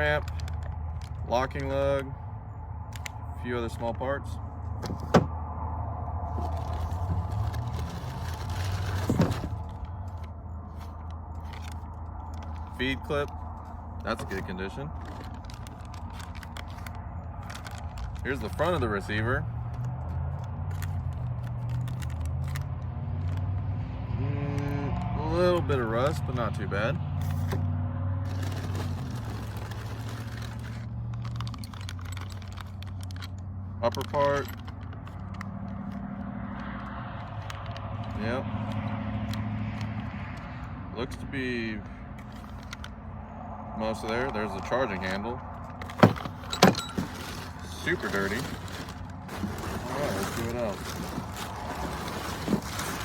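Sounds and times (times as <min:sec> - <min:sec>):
traffic rumble: 0:00.0 - 0:53.0
passing vehicle rush: 0:04.2 - 0:15.0, 0:35.3 - 0:53.0.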